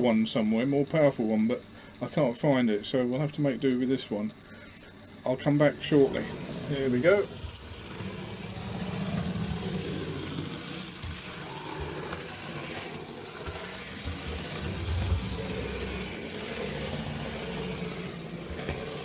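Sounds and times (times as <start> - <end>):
model train motor whirring: 5.0 - 19.0.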